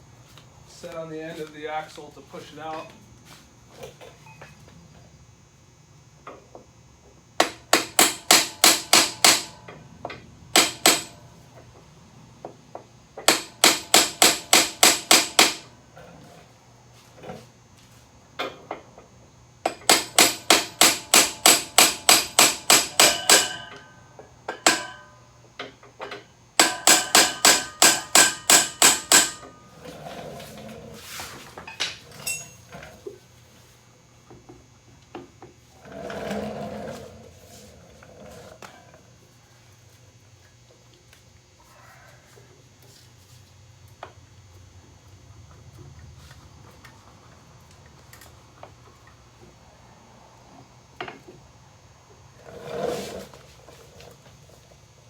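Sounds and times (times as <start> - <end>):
hammer striking metal rod: 7.4 - 9.6, 10.6 - 11.2, 13.3 - 15.6, 19.7 - 23.9, 24.5 - 25.1, 26.6 - 29.6.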